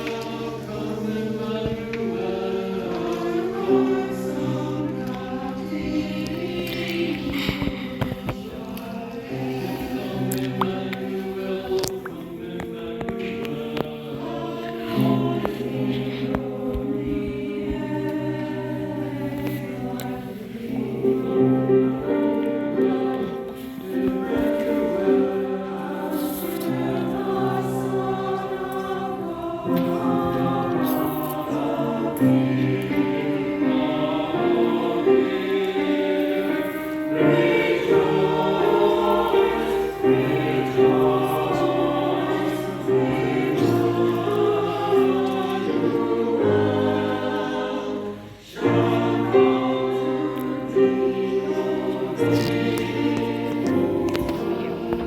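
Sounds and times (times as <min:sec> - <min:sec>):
choir singing gospel song: 0:00.0 - 0:55.0.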